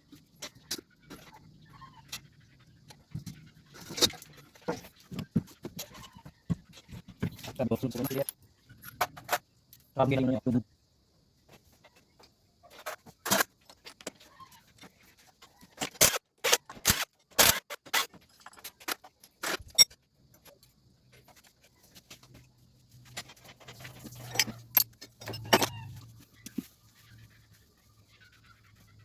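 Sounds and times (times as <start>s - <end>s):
metal parts clinking: 16.9s - 20.0s, 24.0s - 26.0s.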